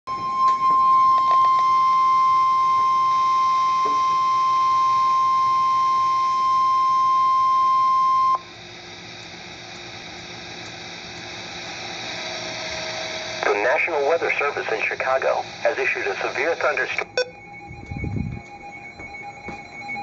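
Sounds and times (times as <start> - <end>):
emergency alert beep: 0.1 - 8.5, 13.4 - 20.0
faint radio hiss: 13.4 - 17.2.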